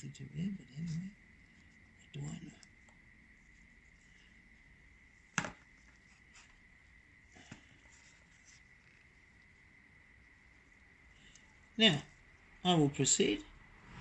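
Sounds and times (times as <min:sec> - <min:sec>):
faint steady high tone: 0:00.0 - 0:13.6.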